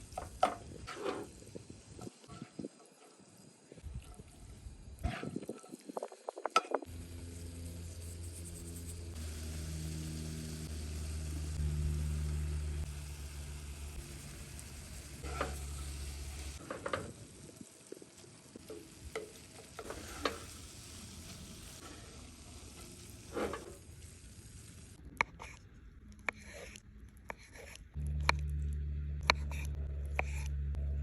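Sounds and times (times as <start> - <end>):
low steady hum: 6.9 - 16.6, 20.4 - 31.0
food sizzling in a frying pan: 9.1 - 25.0.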